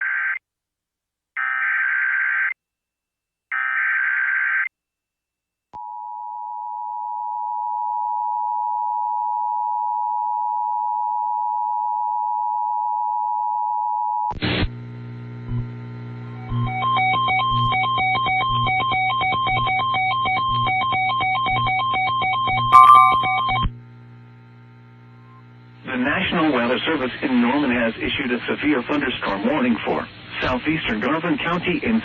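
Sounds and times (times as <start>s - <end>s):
electronic tones: 22.8s - 23.5s
two-tone alert signal: 22.8s - 23.5s.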